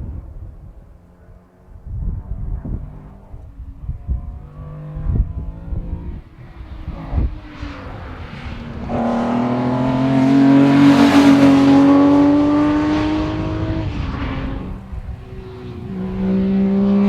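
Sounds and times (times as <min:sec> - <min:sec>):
car engine accelerating hard: 0:04.0 - 0:17.0.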